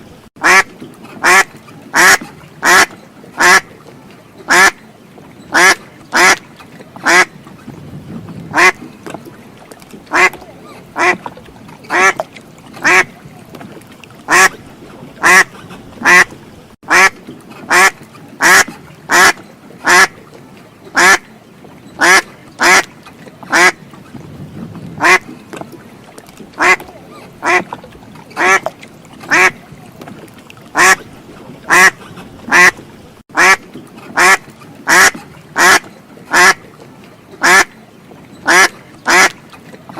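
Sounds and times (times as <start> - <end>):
duck quacking: 0.4 - 3.7, 4.5 - 4.8, 5.5 - 6.4, 7.0 - 7.3, 8.5 - 8.8, 10.1 - 10.4, 11.0 - 11.2, 11.9 - 12.2, 12.8 - 13.1, 14.3 - 14.6, 15.2 - 16.3, 16.9 - 20.1, 21.0 - 21.2, 22.0 - 22.9, 23.5 - 23.8, 25.0 - 25.2, 26.6 - 27.6, 28.4 - 28.7, 29.3 - 29.6, 30.8 - 31.0, 31.7 - 32.8, 33.4 - 33.6, 34.2 - 36.6, 37.4 - 37.7, 38.5 - 39.4.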